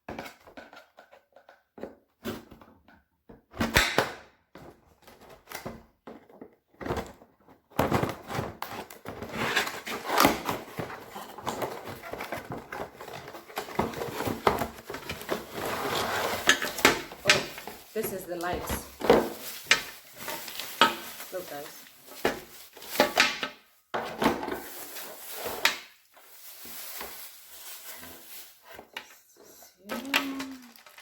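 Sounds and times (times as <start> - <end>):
packaging rustling and crackling: 7.9 - 31.0
packaging clicks and knocks: 9.9 - 15.7.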